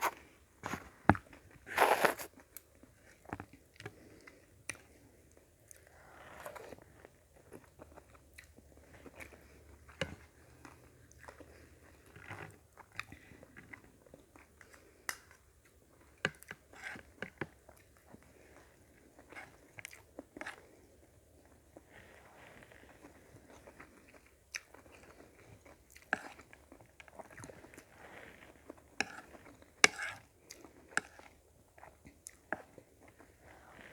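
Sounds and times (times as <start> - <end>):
chewing and biting food: 1.7 - 2.3.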